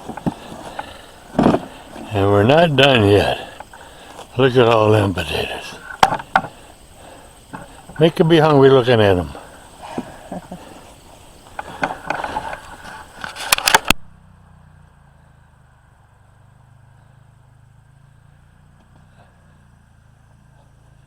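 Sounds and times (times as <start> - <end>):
rustling and clattering handling: 0.0 - 8.2, 9.3 - 14.0
faint low hum: 0.0 - 21.0
sharp clicks: 11.4 - 14.1.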